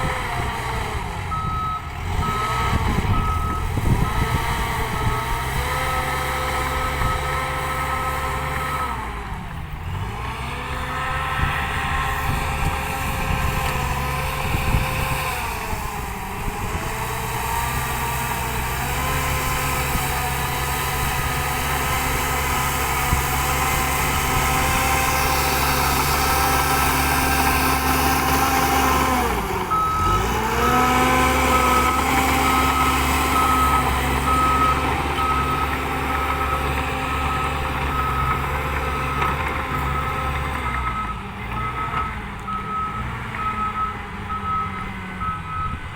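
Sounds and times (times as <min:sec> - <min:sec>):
bulldozer diesel engine: 0:00.0 - 0:45.9
reversing alarm beeping: 0:01.3 - 0:09.1, 0:19.4 - 0:45.9.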